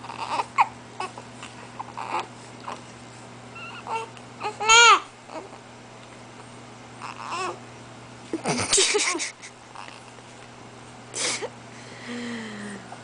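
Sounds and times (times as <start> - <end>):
babies whimpering and babbling: 1.8 - 2.8, 3.6 - 5.6, 7.0 - 7.6.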